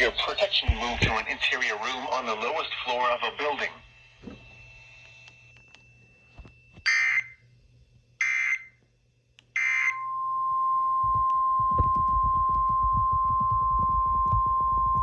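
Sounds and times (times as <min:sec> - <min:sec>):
crackling noise: 0:00.0 - 0:05.8, 0:11.0 - 0:15.0
steady warning alarm tone: 0:00.0 - 0:15.0
screechy digital data bursts: 0:06.8 - 0:07.4.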